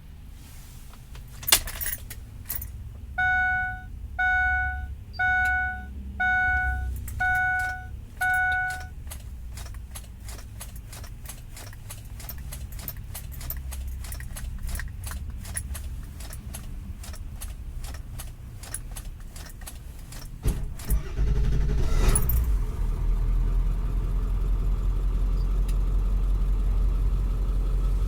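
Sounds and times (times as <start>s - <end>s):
keys jangling: 1.2s - 2.8s, 6.9s - 20.9s, 22.0s - 22.5s
electronic warning chimes: 3.2s - 8.9s.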